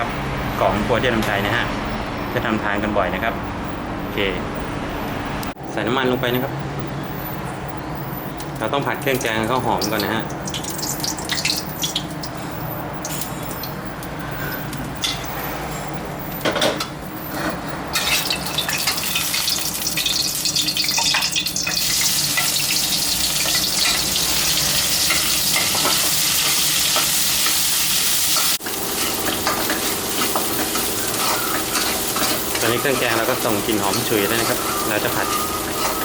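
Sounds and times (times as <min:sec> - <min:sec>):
curry paste sizzling in oil: 0:09.5 - 0:12.4, 0:18.0 - 0:36.0
spatula scraping a pan: 0:28.3 - 0:36.0.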